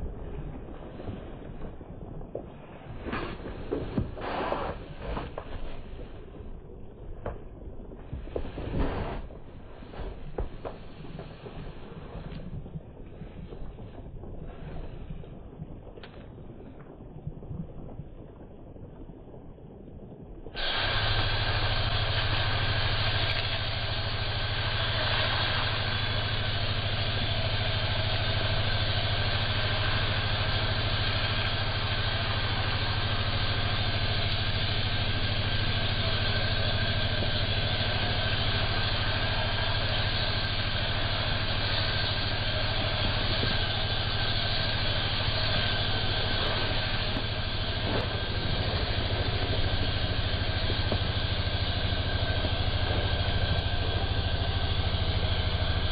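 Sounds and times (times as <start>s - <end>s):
motor-driven machine humming: 20.6s - 55.9s.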